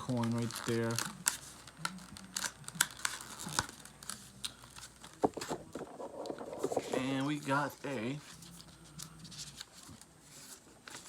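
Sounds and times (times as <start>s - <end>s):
packaging crinkling and tearing: 0.0s - 7.6s.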